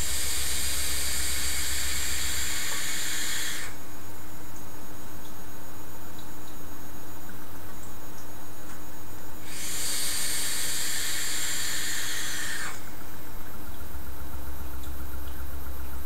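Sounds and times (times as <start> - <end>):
breathy vape hiss: 0.0 - 3.8, 9.4 - 12.9.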